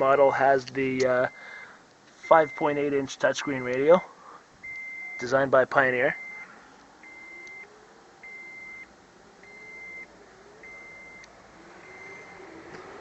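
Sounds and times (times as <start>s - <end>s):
car warning chime beeping: 2.2s - 12.6s.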